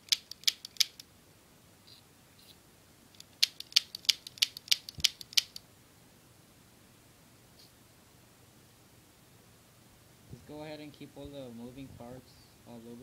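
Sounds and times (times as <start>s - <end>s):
pistol trigger clicks: 0.0s - 1.1s, 3.2s - 5.6s.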